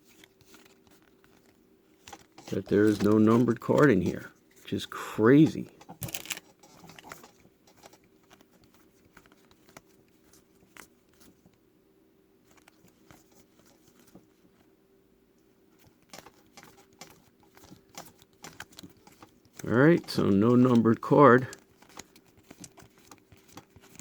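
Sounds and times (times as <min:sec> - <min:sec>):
trading cards flipped by hand: 0:00.0 - 0:11.4
faint steady hum: 0:00.0 - 0:24.0.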